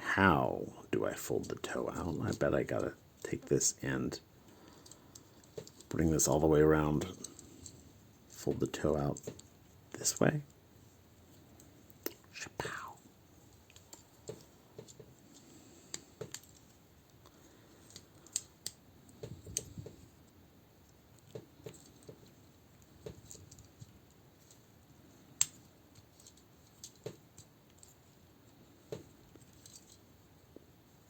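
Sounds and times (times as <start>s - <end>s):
plastic parts clicking: 4.7s - 5.9s, 15.9s - 19.9s, 28.9s - 30.0s.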